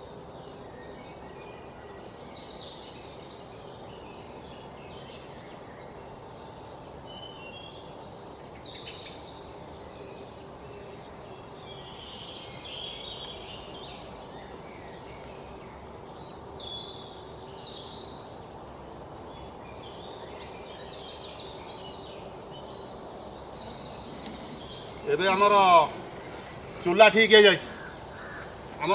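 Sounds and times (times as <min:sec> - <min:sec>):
steady background hiss: 0:00.0 - 0:28.9
small birds chirping: 0:07.1 - 0:28.9
bird rattling trills: 0:23.3 - 0:28.9.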